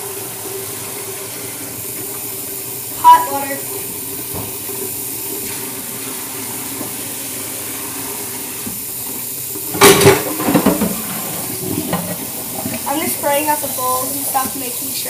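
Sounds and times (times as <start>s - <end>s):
water running from sink sprayer: 0.0s - 15.0s
bowl clattering against sink: 9.7s - 12.8s.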